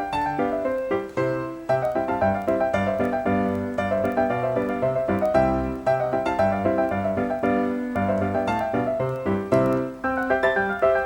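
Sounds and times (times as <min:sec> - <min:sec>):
light piano tune: 0:00.0 - 0:11.0.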